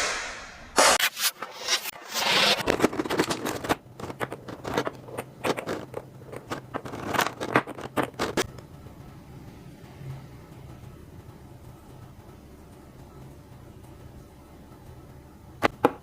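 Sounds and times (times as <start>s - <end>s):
packaging rustling: 2.2s - 8.5s
plastic packaging crinkling: 2.6s - 8.5s.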